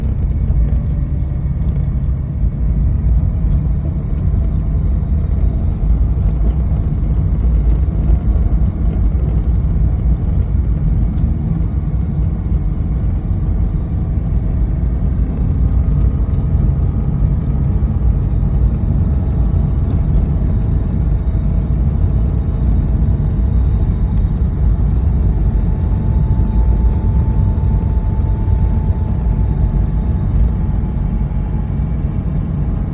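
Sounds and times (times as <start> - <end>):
car low rumble: 0.0 - 32.9
faint whining tones: 0.0 - 32.9
faint high ticks: 15.6 - 32.9.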